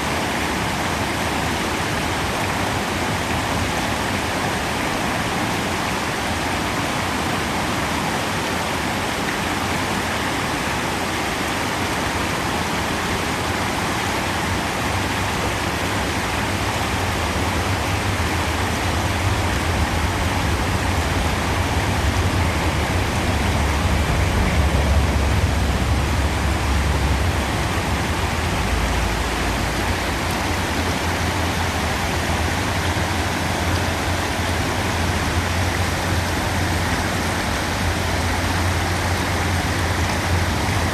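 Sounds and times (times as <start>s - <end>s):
river water rushing: 0.0s - 40.9s
low rumble: 15.9s - 40.9s.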